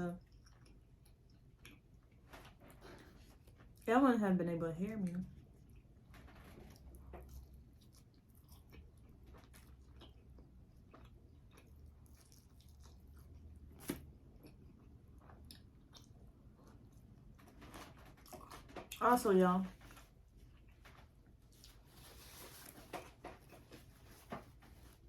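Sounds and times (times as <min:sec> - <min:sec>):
person chewing: 0:00.2 - 0:03.8, 0:05.5 - 0:06.1, 0:06.7 - 0:19.0.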